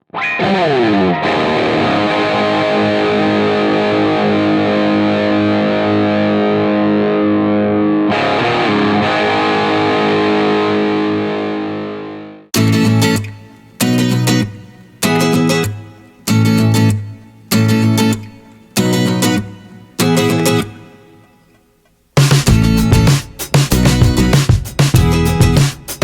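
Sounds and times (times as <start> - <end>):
distorted electric guitar chords: 0.0 - 17.0, 22.2 - 26.0.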